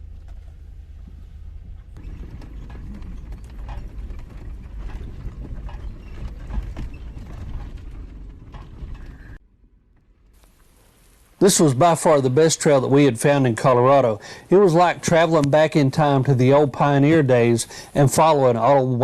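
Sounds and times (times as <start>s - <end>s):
vehicle knocks and clunks: 0.0s - 9.4s
vehicle engine rumble: 0.0s - 19.0s.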